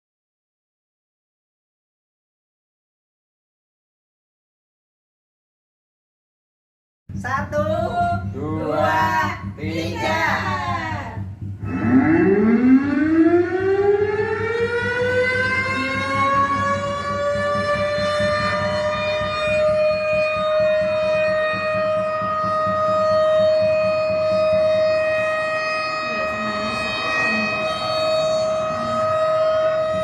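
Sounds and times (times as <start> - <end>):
siren winding up: 8.6 - 30.0.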